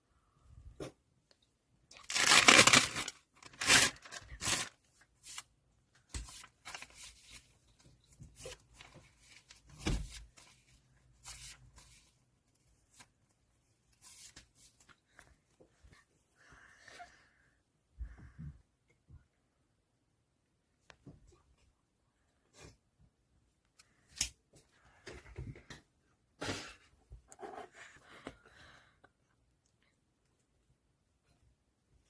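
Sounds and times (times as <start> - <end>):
packaging crinkling: 2.0 - 4.8
packaging tearing: 2.0 - 4.8.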